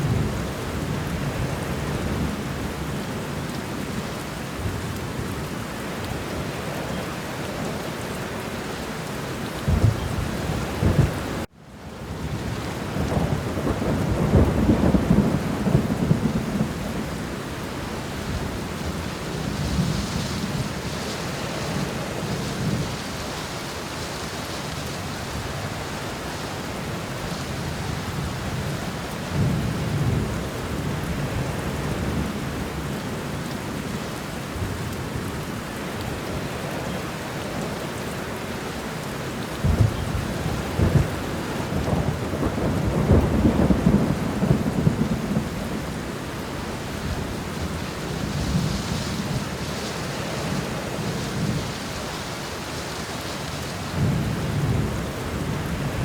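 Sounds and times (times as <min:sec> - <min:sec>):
heavy rain: 0:00.0 - 0:56.0
rolling thunder: 0:09.6 - 0:11.5, 0:12.4 - 0:17.3, 0:39.6 - 0:49.8.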